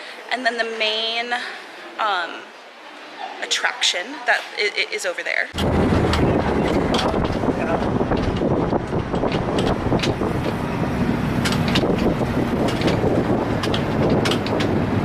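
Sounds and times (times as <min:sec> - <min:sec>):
wind buffeting microphone: 0:05.5 - 0:15.0.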